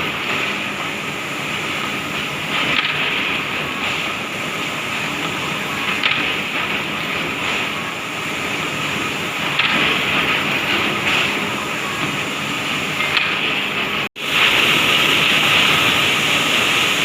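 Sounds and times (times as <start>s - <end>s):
woodworking machinery hissing: 0.0s - 17.0s.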